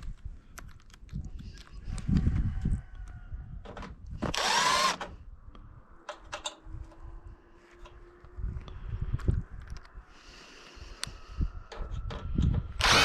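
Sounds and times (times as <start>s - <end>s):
power drill motor whine: 4.2s - 5.1s, 12.8s - 13.0s.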